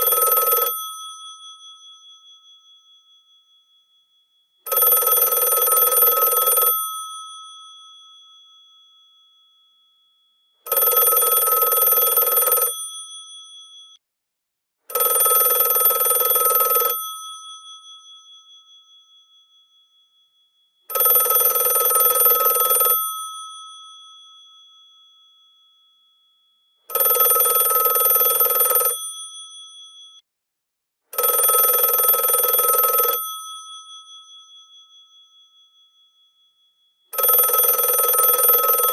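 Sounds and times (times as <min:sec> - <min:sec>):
telephone bells ringing: 0:00.0 - 0:00.9, 0:04.7 - 0:07.0, 0:10.7 - 0:12.8, 0:14.9 - 0:17.1, 0:20.9 - 0:23.2, 0:26.9 - 0:29.0, 0:31.2 - 0:33.3, 0:37.2 - 0:38.9.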